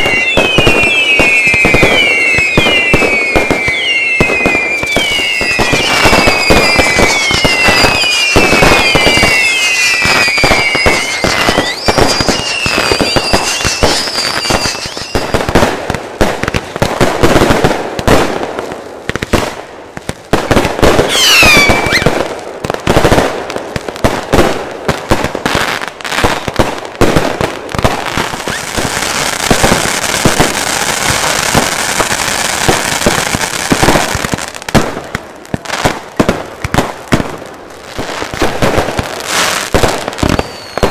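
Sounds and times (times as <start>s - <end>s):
firework whistles: 0.0s - 15.7s, 21.0s - 22.2s, 28.2s - 34.1s, 38.2s - 40.9s
crackling hiss: 0.0s - 16.9s
fireworks bangs and crackles: 0.0s - 40.9s.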